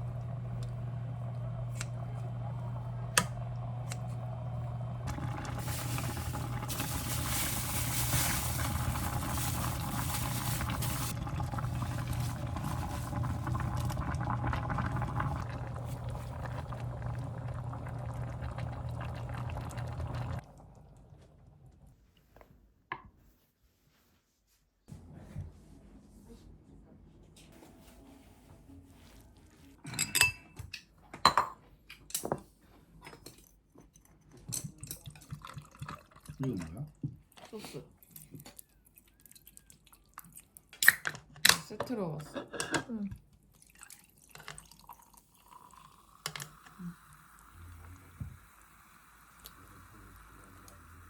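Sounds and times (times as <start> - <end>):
soup boiling and bubbling: 0.0 - 21.9, 34.9 - 36.7, 43.5 - 51.0
dishes and cutlery clinking: 29.8 - 34.8.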